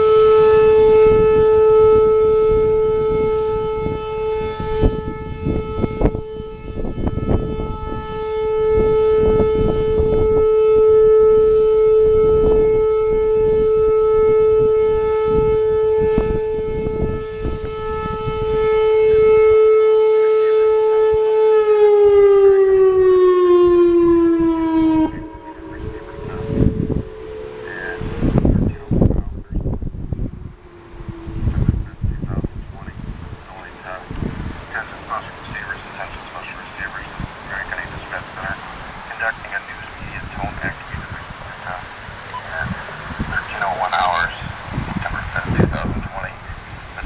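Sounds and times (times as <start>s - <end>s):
electronic warning siren: 0.0s - 47.0s.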